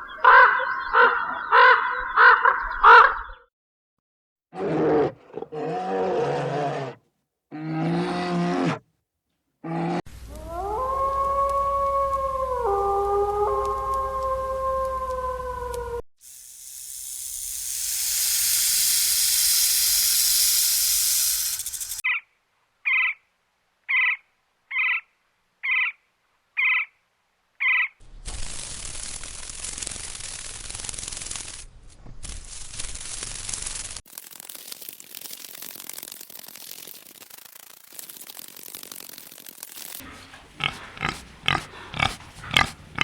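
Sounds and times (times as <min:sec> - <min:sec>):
animal howl: 0:04.6 - 0:08.8, 0:09.6 - 0:16.0
loud hiss: 0:16.2 - 0:22.0
rough noisy sound: 0:16.3 - 0:22.0
short animal calls: 0:40.0 - 0:43.0.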